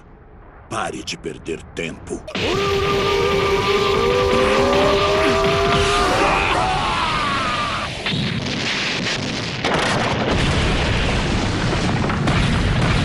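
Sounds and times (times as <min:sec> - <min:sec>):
explosion-like rumble: 0:00.0 - 0:13.0
falling tones: 0:02.3 - 0:07.9.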